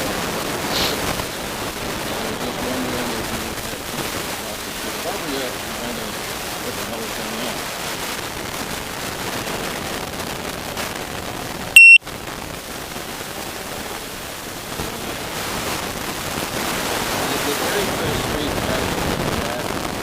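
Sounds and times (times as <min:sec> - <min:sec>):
outdoor noise haze: 0:00.0 - 0:20.0
loud electronic beep: 0:11.8 - 0:12.0.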